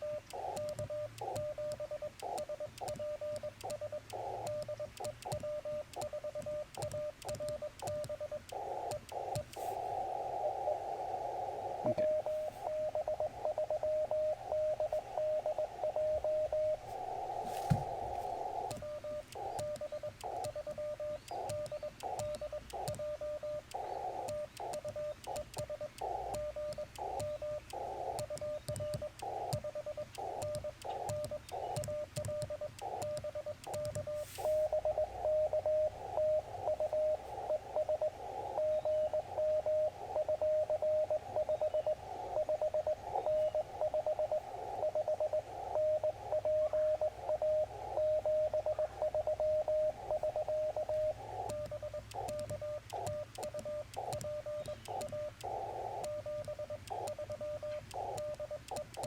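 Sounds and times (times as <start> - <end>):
morse code tones: 0.0 - 59.0
radio hiss: 8.5 - 20.6, 29.2 - 31.8, 33.7 - 58.4.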